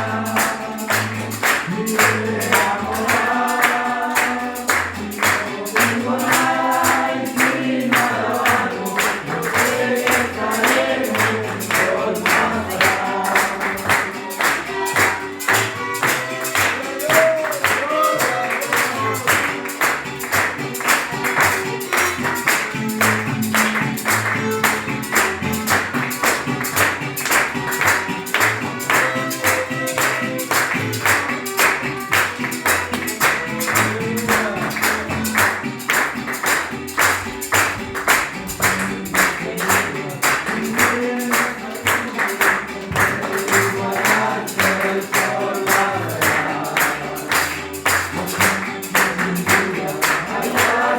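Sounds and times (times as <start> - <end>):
violins playing: 0.0 - 35.9
quick rhythmic beat: 0.0 - 50.9.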